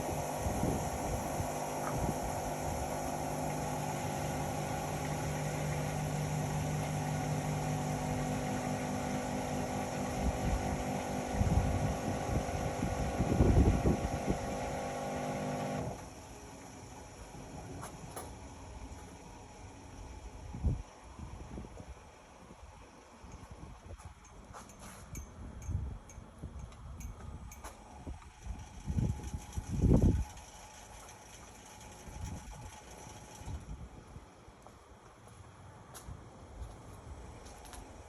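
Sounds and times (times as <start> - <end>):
washing machine motor hum: 0.0 - 21.2, 27.9 - 34.0.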